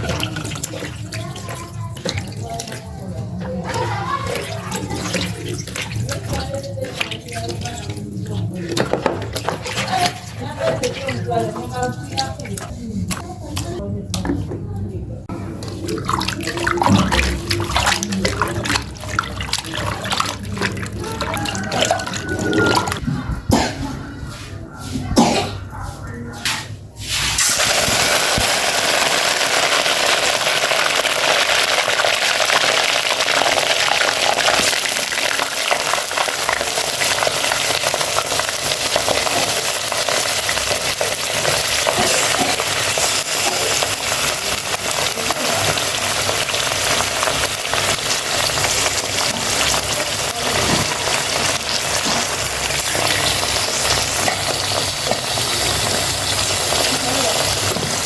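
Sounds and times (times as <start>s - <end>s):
food frying sizzle: 27.4s - 58.0s.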